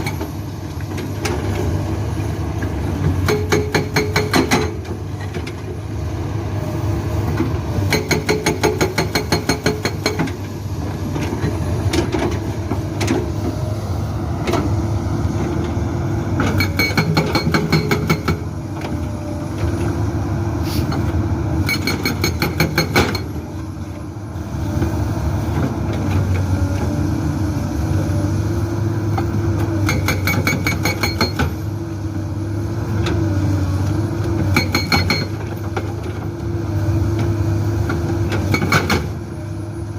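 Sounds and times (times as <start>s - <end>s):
excavator diesel engine under load: 0.0s - 39.9s
hydraulic breaker hammering rock: 3.2s - 4.9s, 7.9s - 10.4s, 16.4s - 18.5s, 21.6s - 23.4s, 29.8s - 31.6s, 34.4s - 35.9s, 38.3s - 39.2s.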